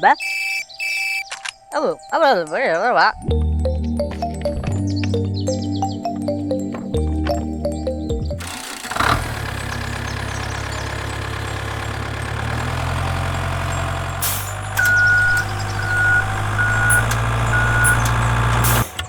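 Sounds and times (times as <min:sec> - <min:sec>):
high reversing beeps: 0:00.0 - 0:01.4, 0:14.7 - 0:18.9
vehicle engine running: 0:06.8 - 0:19.0.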